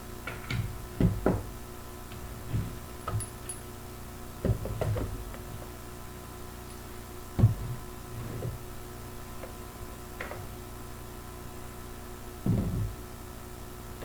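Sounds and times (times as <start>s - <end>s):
dull handling knocks: 0.6s - 1.6s.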